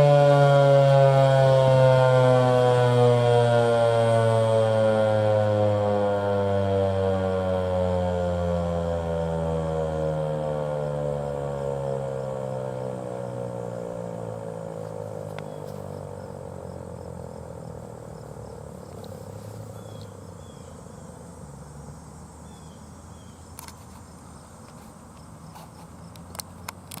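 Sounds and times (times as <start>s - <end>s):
warning siren winding down: 0.0s - 19.1s
low outdoor hum: 0.0s - 27.0s
faint chirps and clicks: 18.9s - 20.6s.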